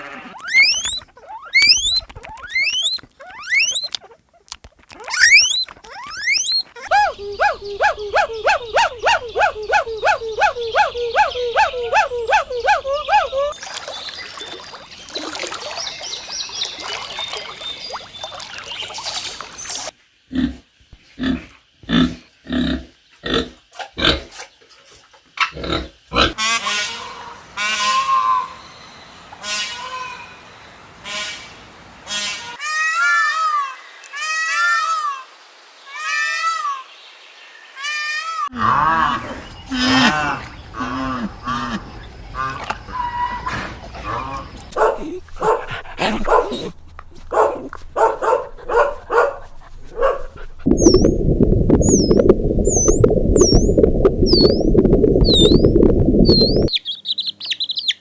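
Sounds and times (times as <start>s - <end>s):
high chirping calls: 0.4s - 4.2s, 4.8s - 19.9s, 50.7s - 58.0s
pig grunting: 21.2s - 24.3s, 25.5s - 26.4s, 43.5s - 46.8s.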